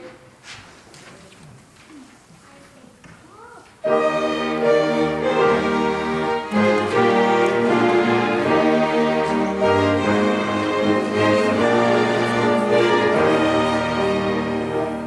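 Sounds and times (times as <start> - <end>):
orchestra playing sustained chords: 3.8 - 15.0
strings: 3.8 - 15.0.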